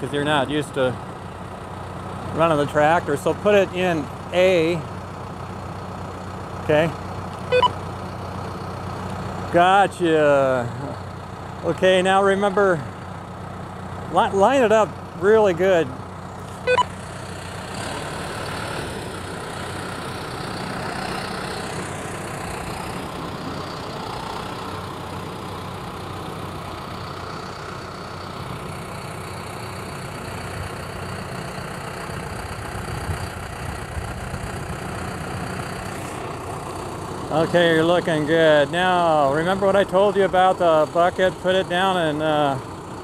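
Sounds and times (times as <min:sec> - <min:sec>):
tractor engine running at low revs: 0:00.0 - 0:43.0.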